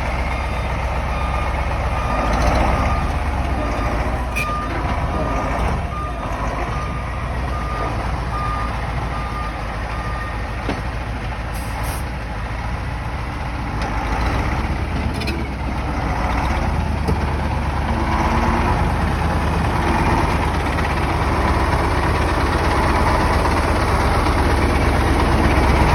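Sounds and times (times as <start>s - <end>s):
reversing alarm beeping: 0.0s - 10.6s
truck diesel engine running: 0.0s - 25.9s.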